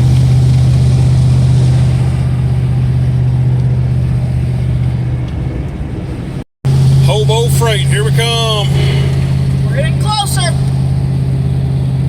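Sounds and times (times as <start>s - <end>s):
engine and road drone in cabin: 0.0s - 12.0s.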